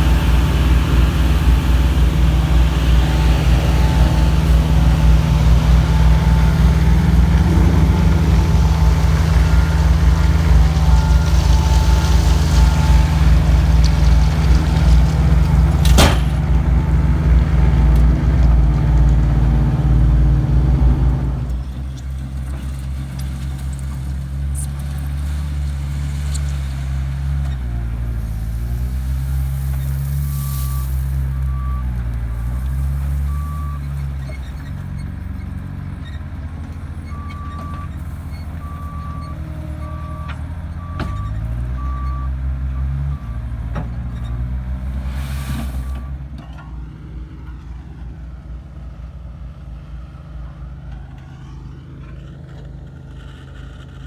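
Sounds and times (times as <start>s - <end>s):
reversing alarm beeping: 0.0s - 13.9s
diesel engine running: 0.0s - 54.0s
brief hisses: 44.8s - 46.2s.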